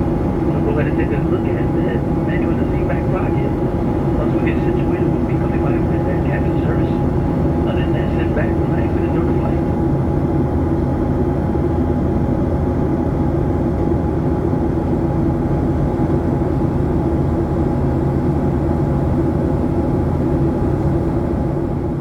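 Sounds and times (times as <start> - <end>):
mid-pitched engine hum: 0.0 - 17.6
jet engine rumble in cabin: 0.0 - 22.0.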